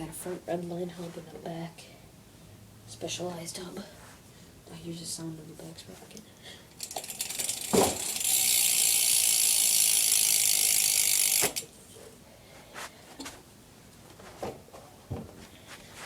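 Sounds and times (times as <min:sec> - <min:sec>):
bike freewheel ratchet clicking: 0:06.7 - 0:11.7
thump: 0:07.7 - 0:08.0.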